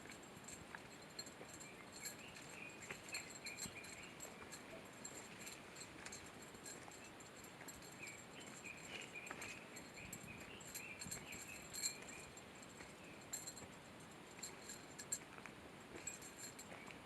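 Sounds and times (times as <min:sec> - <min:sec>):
hiker rustling along trail: 0:00.0 - 0:17.0
birds chirping: 0:00.9 - 0:13.6.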